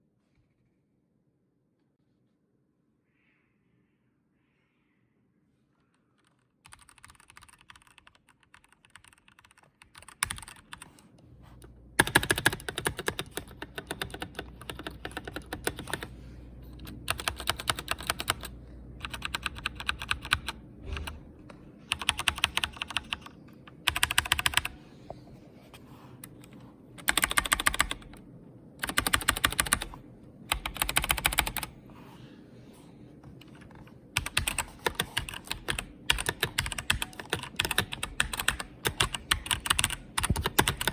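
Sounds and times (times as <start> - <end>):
mechanical keyboard typing: 6.2 - 11.0, 12.0 - 16.1, 16.7 - 21.2, 21.9 - 24.8, 26.3 - 28.2, 28.8 - 31.7, 33.4 - 40.9.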